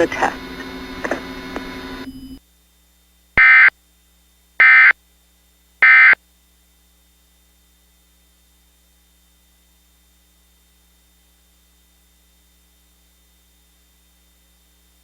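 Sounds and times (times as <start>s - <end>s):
warbling modem-like data tones: 0.0s - 2.4s, 3.4s - 3.7s, 4.6s - 4.9s, 5.8s - 6.2s.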